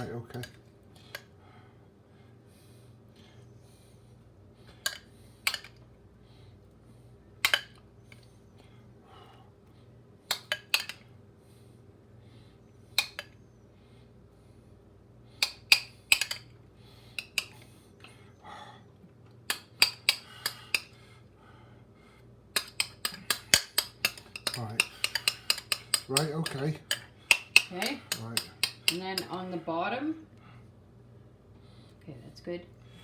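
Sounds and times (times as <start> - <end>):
cutlery clinking on plates: 22.6 - 29.4.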